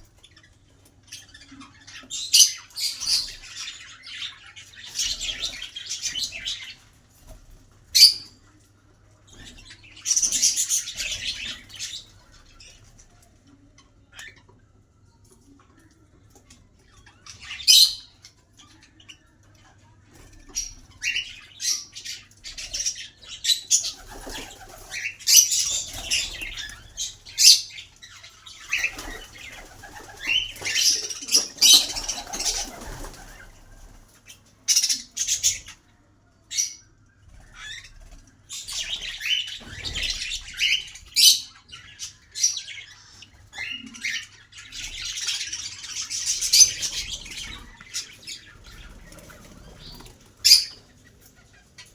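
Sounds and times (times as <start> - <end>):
small birds chirping: 0.0 - 51.9
wings flapping: 23.8 - 27.4, 28.6 - 34.4, 44.8 - 51.4.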